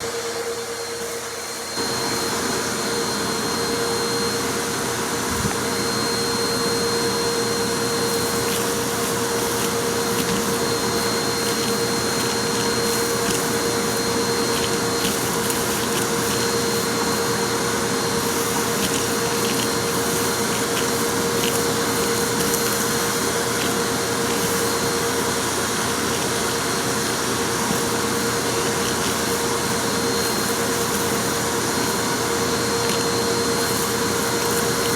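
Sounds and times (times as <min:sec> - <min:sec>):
vacuum cleaner running: 0:00.0 - 0:34.9
debris rattling in vacuum: 0:07.7 - 0:34.9.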